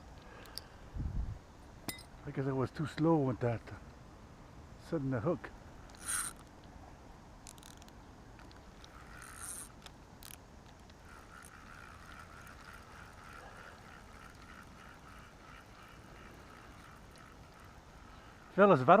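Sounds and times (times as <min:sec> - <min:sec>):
waterfowl calling: 0:11.1 - 0:18.5.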